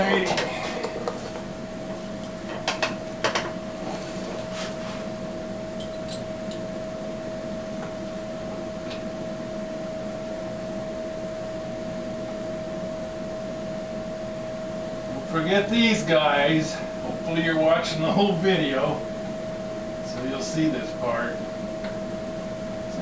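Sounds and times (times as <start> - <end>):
electrical hum: 0.0 - 23.0
metal tools clinking: 5.8 - 6.6.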